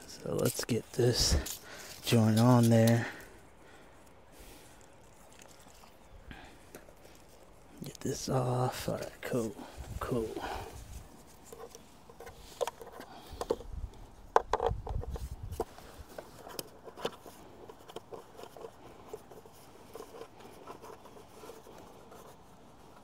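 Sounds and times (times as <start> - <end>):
plastic hose handling clicks: 11.5 - 13.7.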